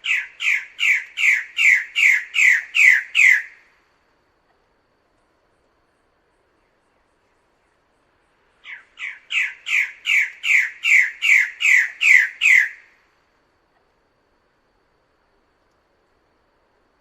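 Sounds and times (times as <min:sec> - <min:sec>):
bird harsh descending calls: 0:00.0 - 0:03.6, 0:08.6 - 0:12.8.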